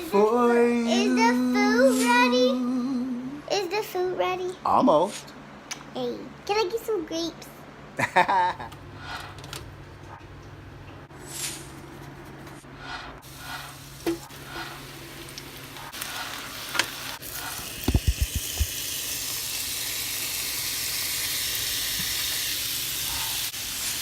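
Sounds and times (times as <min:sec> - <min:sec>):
food sizzling in a pan: 0:13.2 - 0:24.0.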